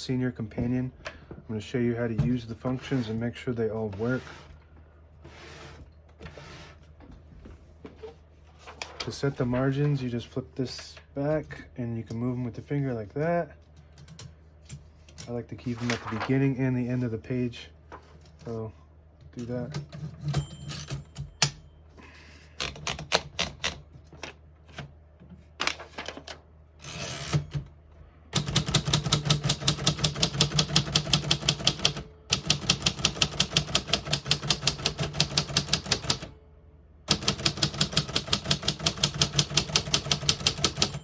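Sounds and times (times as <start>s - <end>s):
typewriter keystrokes: 28.4s - 36.3s, 37.1s - 41.0s.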